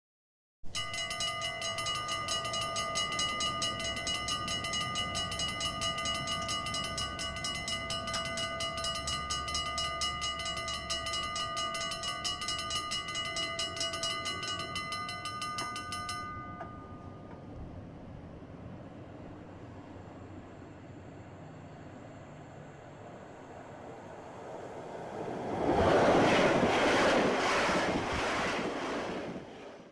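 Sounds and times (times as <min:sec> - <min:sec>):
train ringing tones: 0:00.7 - 0:18.4
train rumble: 0:00.7 - 0:29.9.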